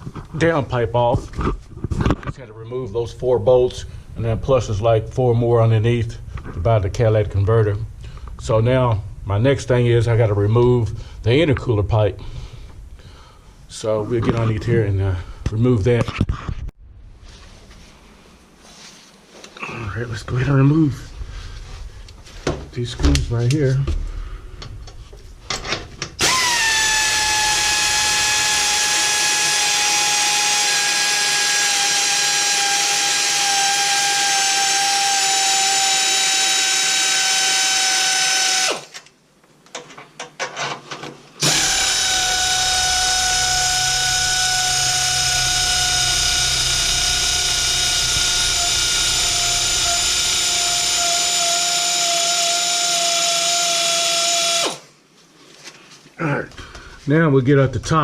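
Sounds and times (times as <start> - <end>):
power drill whining: 26.2 - 39.0, 41.4 - 54.9.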